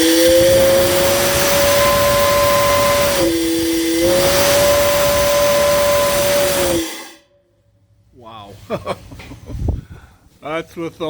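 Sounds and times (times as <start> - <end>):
rush of steam: 0.0 - 7.2
steam whistle blowing: 0.0 - 7.5.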